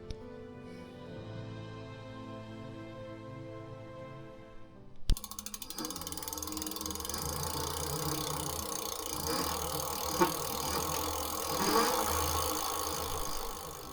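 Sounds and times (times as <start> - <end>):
electric bike motor and road noise: 5.0 - 13.9
rattles: 5.1 - 13.9.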